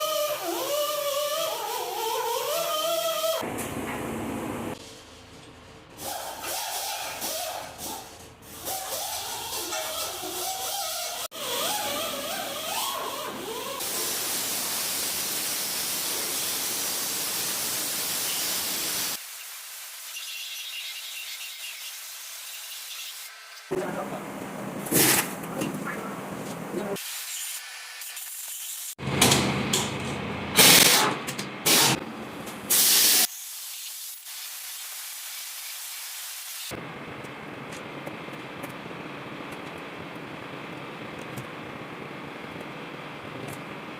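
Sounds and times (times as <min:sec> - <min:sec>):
loud steady hiss: 0:13.8 - 0:23.5.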